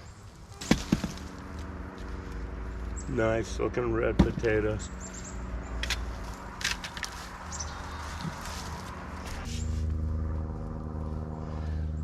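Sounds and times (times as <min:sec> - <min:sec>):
low droning hum: 0:00.0 - 0:12.0
hands rustling through hay and soil: 0:06.1 - 0:11.2.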